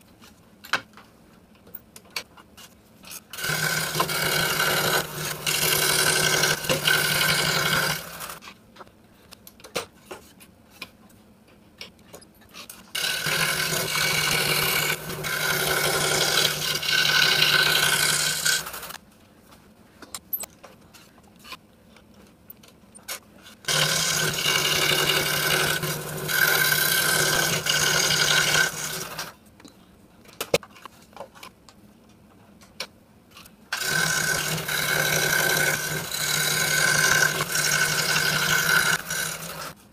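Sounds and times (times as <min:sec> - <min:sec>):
scroll saw cutting wood: 0:03.3 - 0:08.4, 0:13.0 - 0:19.0, 0:23.6 - 0:29.4, 0:33.8 - 0:39.8.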